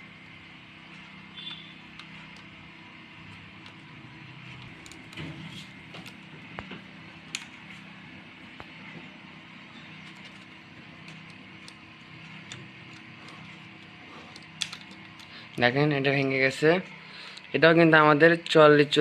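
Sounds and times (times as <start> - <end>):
steady low hum: 0.0 - 19.0
clicks and creaks of chip pins: 3.2 - 6.6, 9.7 - 15.6.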